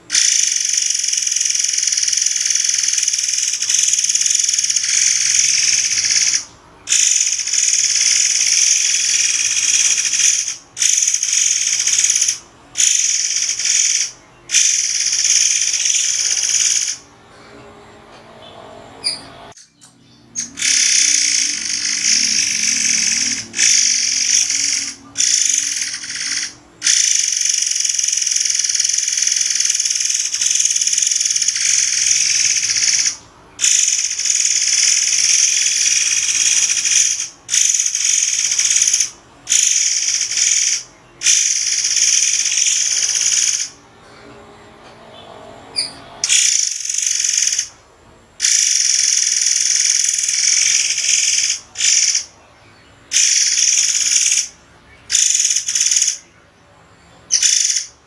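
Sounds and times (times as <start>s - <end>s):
bird shrill high-pitched calls: 19.0s - 43.8s, 45.8s - 47.7s, 53.1s - 56.3s, 57.3s - 58.0s.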